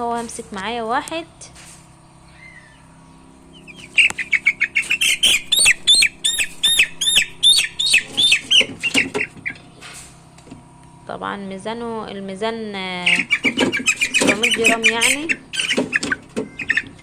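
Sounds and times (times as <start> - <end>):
chick peeping loudly: 2.1 - 10.0, 13.0 - 17.0.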